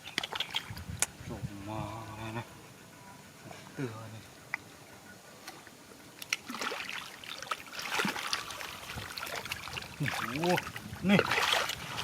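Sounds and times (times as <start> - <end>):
shallow water splashing: 6.2 - 12.0.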